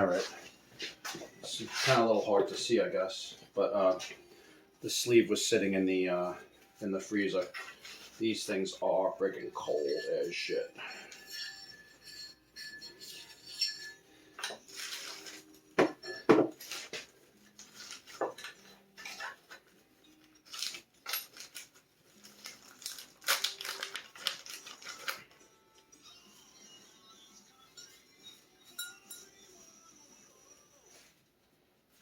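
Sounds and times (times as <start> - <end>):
metal parts clinking and rattling: 20.2 - 25.2.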